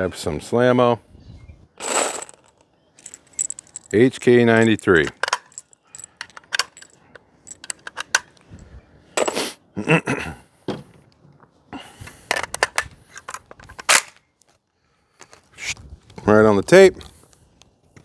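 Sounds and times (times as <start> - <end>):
metallic clicks of rifle loading: 1.9 - 8.5, 12.3 - 14.2.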